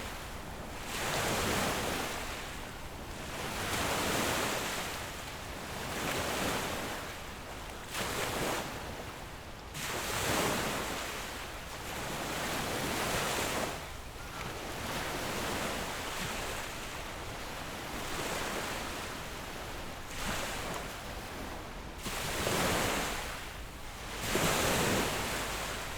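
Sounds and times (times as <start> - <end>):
ocean waves breaking: 12.0 - 25.9.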